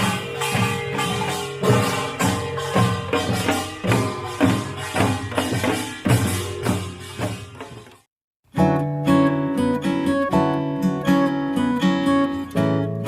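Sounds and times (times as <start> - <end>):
music with steady beat: 0.0 - 8.1.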